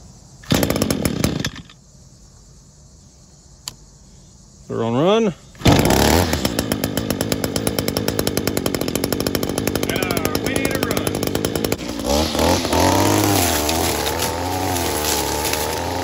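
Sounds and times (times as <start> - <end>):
string trimmer engine running: 0.4 - 1.7, 5.6 - 16.0.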